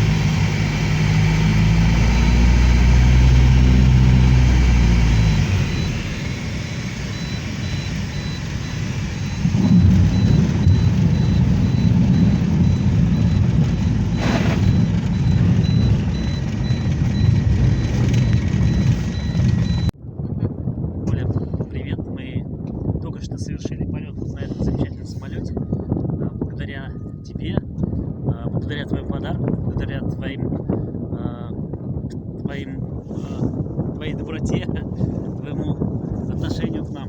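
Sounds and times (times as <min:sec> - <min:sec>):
engine running: 0:00.0 - 0:19.9.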